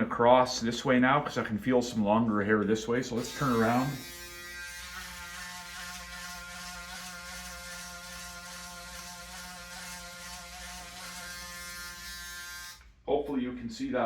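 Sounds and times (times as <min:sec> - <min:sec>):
electric shaver buzzing: 0:03.2 - 0:12.9.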